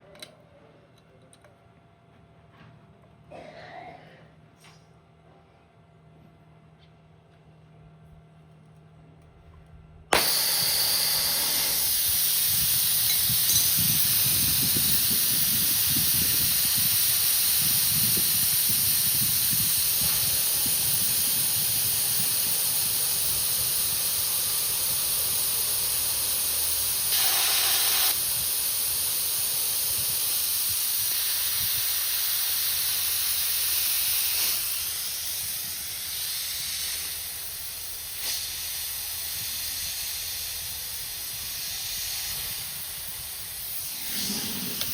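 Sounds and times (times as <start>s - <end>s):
compressed air hissing: 10.1s - 44.9s.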